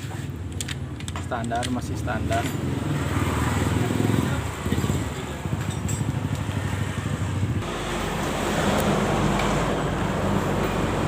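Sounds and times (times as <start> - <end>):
motorcycle engine running: 2.6 - 8.4.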